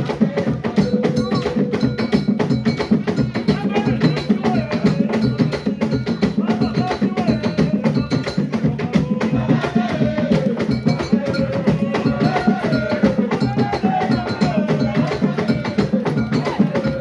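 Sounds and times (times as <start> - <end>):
drums and hand percussion: 0.0 - 17.0
person singing: 3.3 - 17.0.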